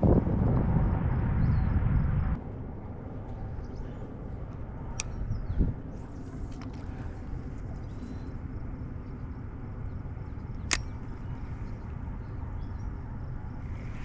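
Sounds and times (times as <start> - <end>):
outdoor background noise: 0.0 - 14.0
sharp click: 10.5 - 11.1.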